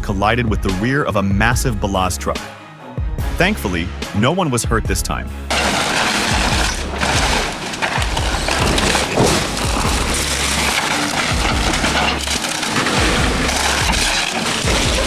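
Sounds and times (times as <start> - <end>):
music with deep bass line: 0.0 - 5.5, 6.4 - 15.0.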